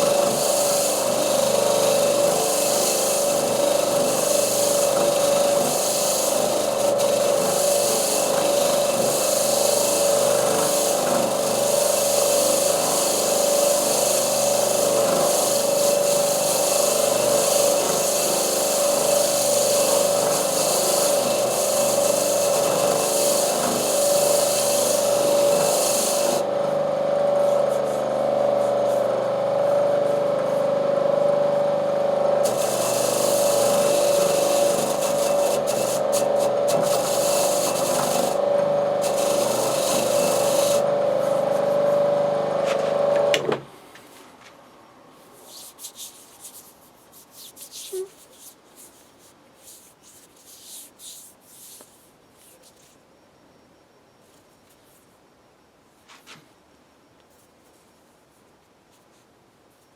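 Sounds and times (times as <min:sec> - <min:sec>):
power tool motor running: 0:00.0 - 0:43.5.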